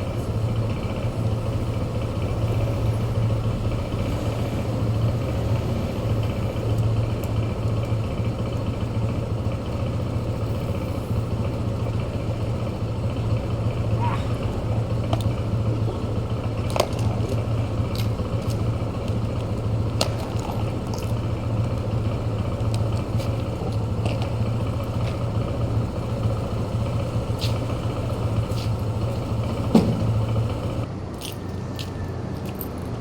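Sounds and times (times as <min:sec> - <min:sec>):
electric air pump running: 0:13.7 - 0:30.9.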